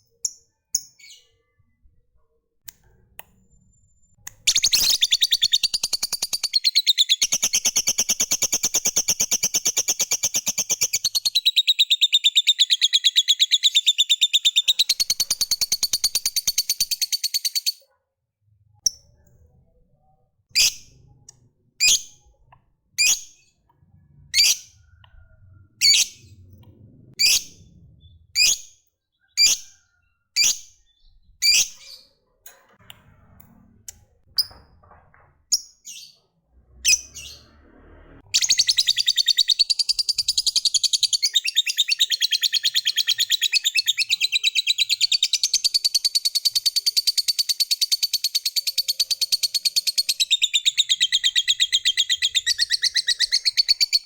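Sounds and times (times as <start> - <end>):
lovebird sharp chirps: 4.2 - 17.8, 20.5 - 21.0, 23.0 - 23.5, 24.3 - 25.2, 25.8 - 26.3, 30.4 - 32.1, 38.3 - 54.0.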